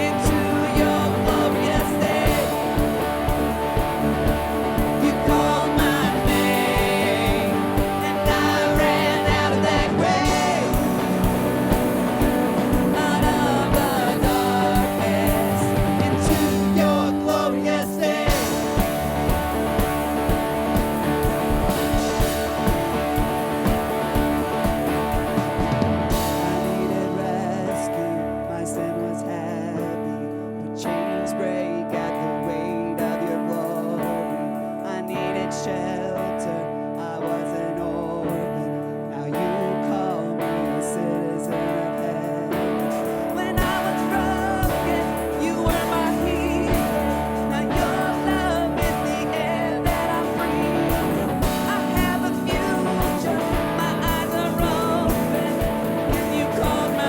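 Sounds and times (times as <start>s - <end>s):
steady drum beat: 0.0s - 27.6s, 42.6s - 57.0s
guitar chords: 0.0s - 57.0s.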